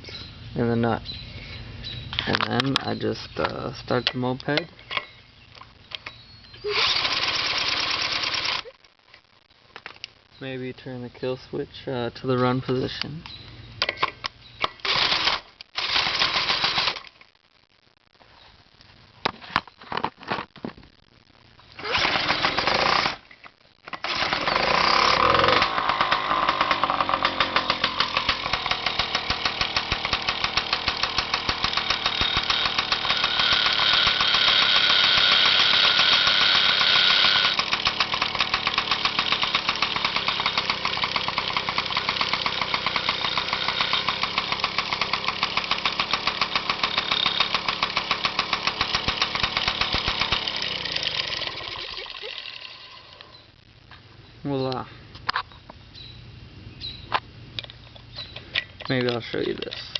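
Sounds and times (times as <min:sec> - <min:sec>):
starter clicks: 0:21.8 - 0:53.3
moped engine running: 0:24.1 - 0:53.2
variator grinding on sandpaper: 0:24.1 - 0:53.2.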